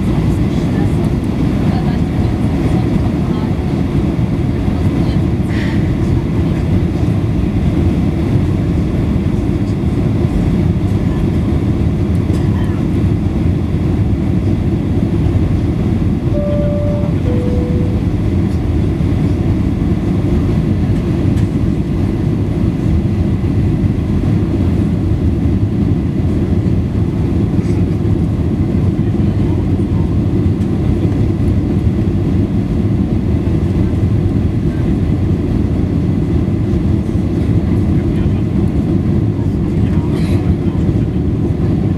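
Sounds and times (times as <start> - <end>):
aircraft cabin engine roar: 0.0 - 41.9
two-note cabin chime: 16.3 - 18.4.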